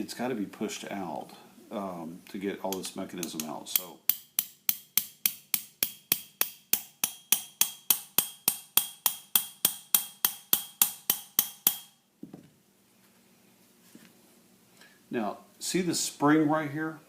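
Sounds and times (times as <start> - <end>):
hammer tapping metal punch: 2.7 - 12.0.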